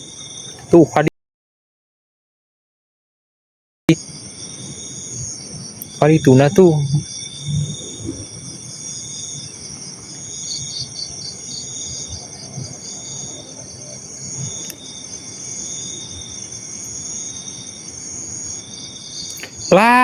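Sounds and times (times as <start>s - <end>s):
crickets chirping: 0.0s - 1.1s, 3.9s - 20.0s
repeating insect call: 0.0s - 1.1s, 3.9s - 20.0s.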